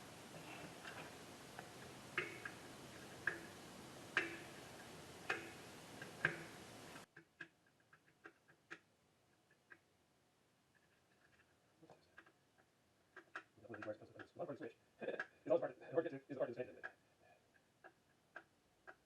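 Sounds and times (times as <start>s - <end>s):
steady hiss: 0.0s - 7.1s.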